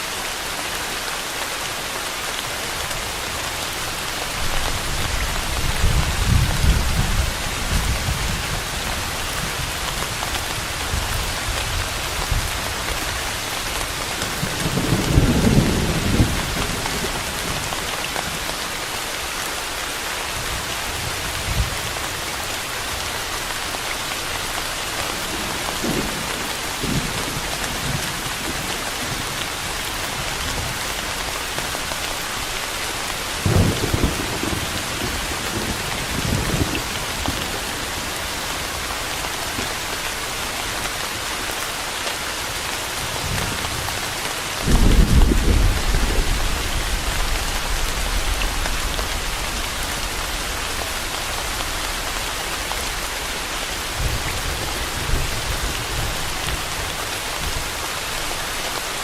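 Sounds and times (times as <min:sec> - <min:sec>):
steady rain hissing: 0:00.0 - 0:59.0
thunder rumbling: 0:44.6 - 0:57.6.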